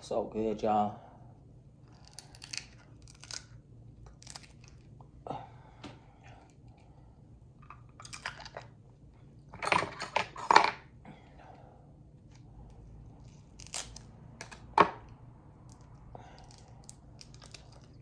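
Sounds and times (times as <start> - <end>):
person chewing crunchy crab: 1.9 - 4.9, 13.2 - 14.6, 15.6 - 18.0.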